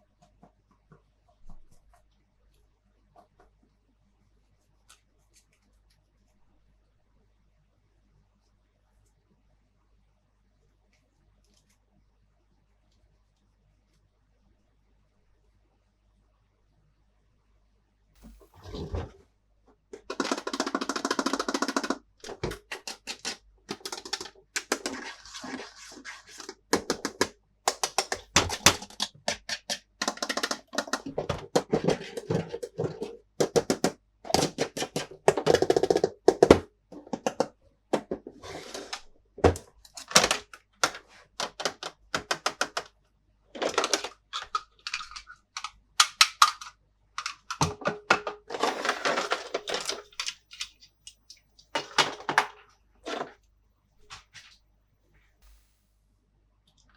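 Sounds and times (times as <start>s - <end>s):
plastic toy pieces clicking: 20.0s - 25.0s, 26.7s - 36.6s, 43.6s - 47.7s.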